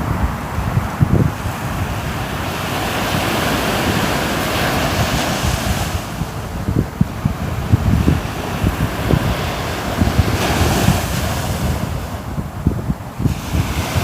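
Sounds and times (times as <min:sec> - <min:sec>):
sea waves washing on shore: 0:00.0 - 0:14.0
wind buffeting microphone: 0:00.0 - 0:14.0.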